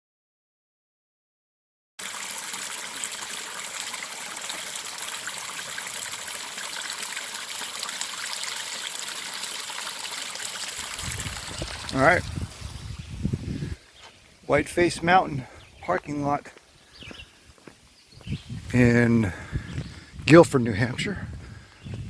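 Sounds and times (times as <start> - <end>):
running water hissing: 2.0 - 18.8.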